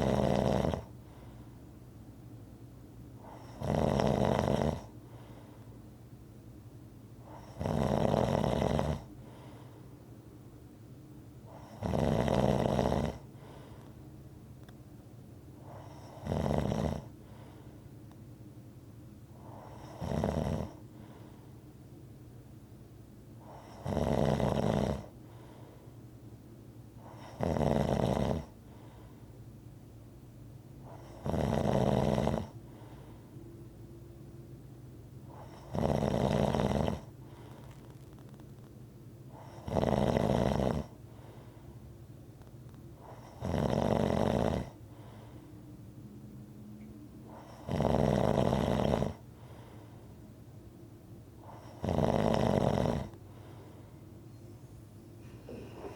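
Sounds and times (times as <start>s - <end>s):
rhythmic snoring: 0.0s - 1.3s, 3.2s - 5.5s, 7.2s - 9.6s, 11.4s - 13.8s, 15.6s - 17.6s, 19.4s - 21.4s, 23.4s - 25.7s, 27.0s - 29.1s, 30.8s - 33.2s, 35.3s - 38.3s, 39.3s - 41.6s, 43.0s - 45.4s, 47.2s - 50.0s, 51.4s - 53.9s, 55.2s - 55.9s
faint steady hum: 0.0s - 55.9s.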